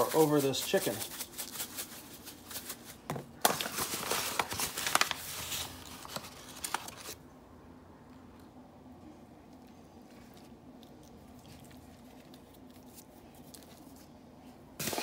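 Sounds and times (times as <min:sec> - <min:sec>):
seasoning shaken over chicken: 0:00.0 - 0:03.1.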